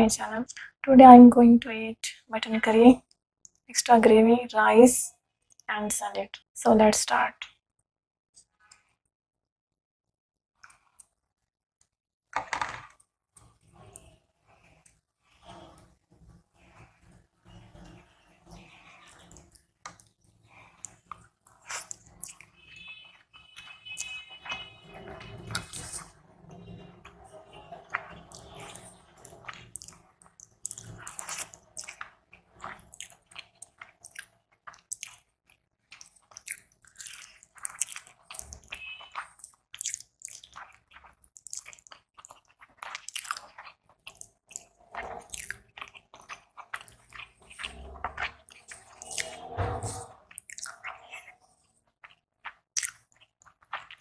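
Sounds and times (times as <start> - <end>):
wet chewing and smacking: 20.8 - 54.0.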